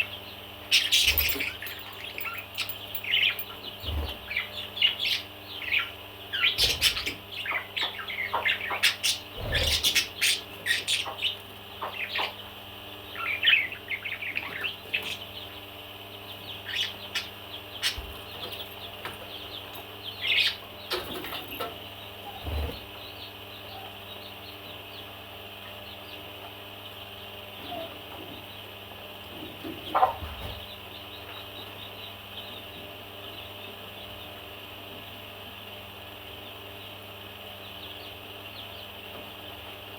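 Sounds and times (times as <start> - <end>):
parrot chirping and squawking: 0.0 - 3.6, 4.2 - 12.4, 13.1 - 15.4, 16.6 - 18.2.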